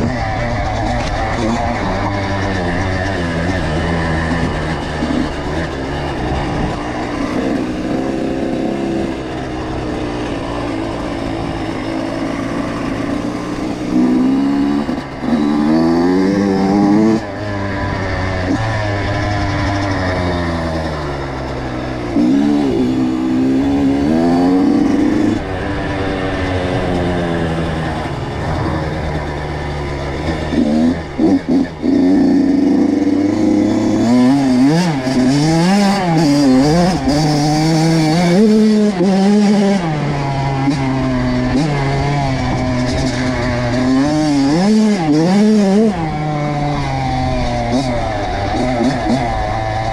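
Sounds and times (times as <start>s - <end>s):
dirt bike engine revving: 0.0s - 49.9s.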